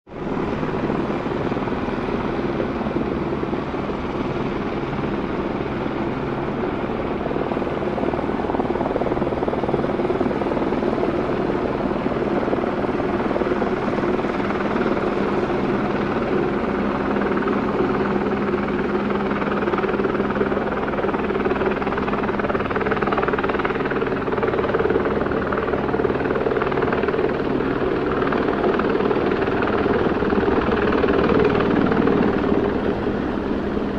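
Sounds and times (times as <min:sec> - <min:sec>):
helicopters hovering: 0:00.1 - 0:33.9.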